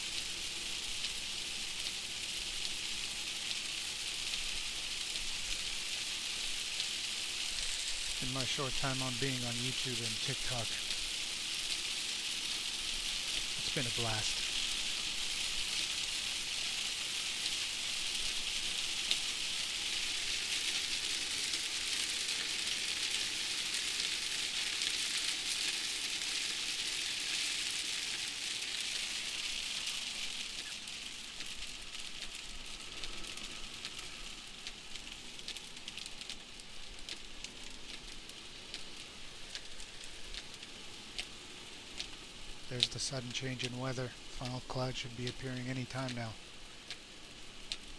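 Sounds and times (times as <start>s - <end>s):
heavy rain hissing: 0.0s - 47.9s
raindrop ticks: 4.3s - 47.9s.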